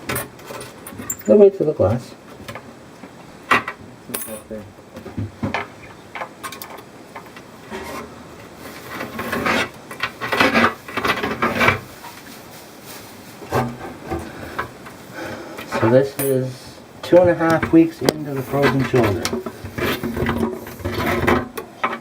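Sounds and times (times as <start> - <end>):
rough scraping strokes: 7.6 - 14.5.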